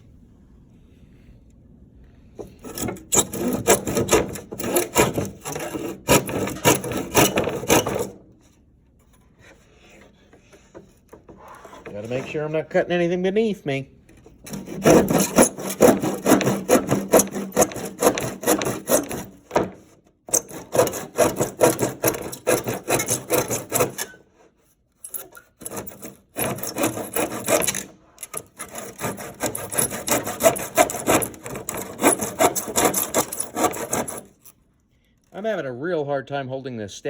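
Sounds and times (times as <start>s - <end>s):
hand saw cutting wood: 2.4s - 8.2s, 11.3s - 12.6s, 14.4s - 34.5s.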